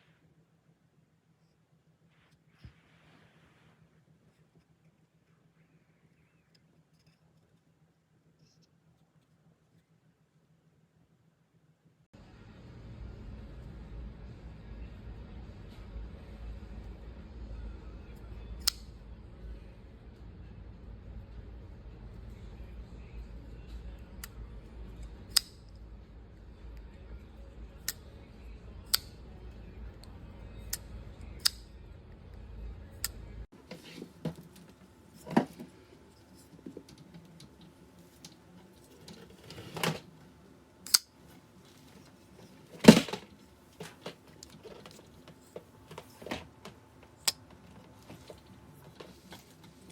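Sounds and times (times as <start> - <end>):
knife blade clicking open and shut: 18.6 - 18.9, 25.3 - 25.7, 28.9 - 29.2, 31.4 - 31.7, 40.8 - 41.1.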